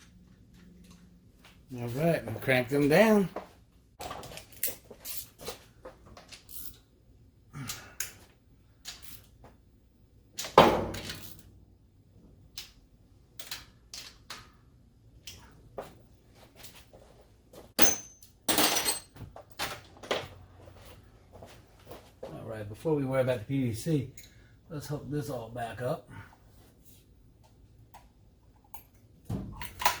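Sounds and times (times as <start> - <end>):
metallic clicks of hand tools: 13.4 - 14.5, 15.2 - 15.5.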